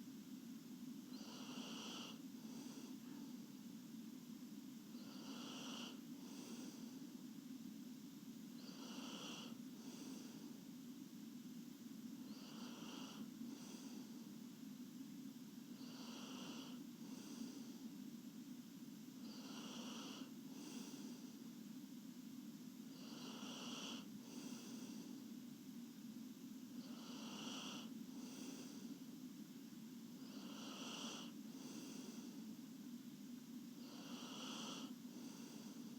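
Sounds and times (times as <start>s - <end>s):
steady low hum: 0.0s - 35.9s
girl snoring softly: 1.1s - 3.4s, 4.9s - 7.0s, 8.6s - 10.6s, 12.2s - 14.2s, 15.7s - 17.8s, 19.2s - 21.4s, 22.9s - 25.2s, 26.8s - 29.0s, 30.1s - 32.5s, 33.8s - 35.9s.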